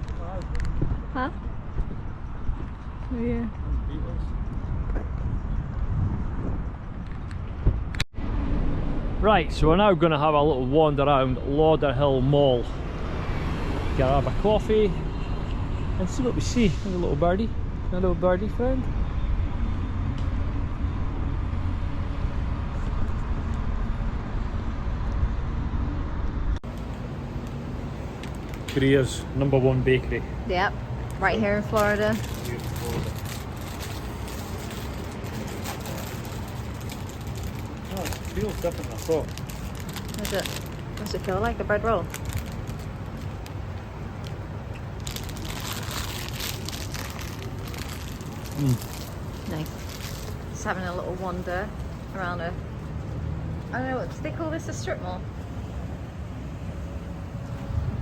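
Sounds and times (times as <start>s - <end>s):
low outdoor rumble: 16.2s - 58.0s
packaging crinkling: 31.7s - 50.6s.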